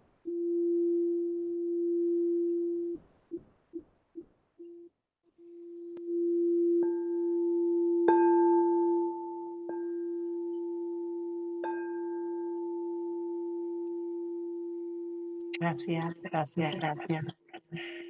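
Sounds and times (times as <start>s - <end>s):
crystal singing bowl ringing: 6.0s - 15.5s.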